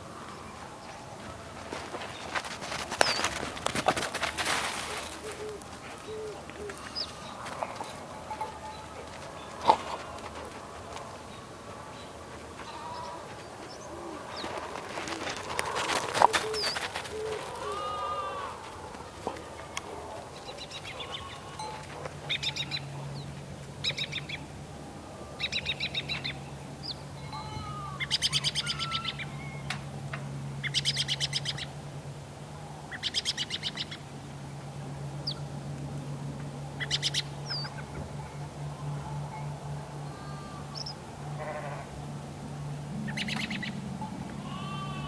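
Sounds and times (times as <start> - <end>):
birds rattling chatters: 0.0 - 24.4, 36.1 - 45.0
low steady hum: 0.0 - 45.0.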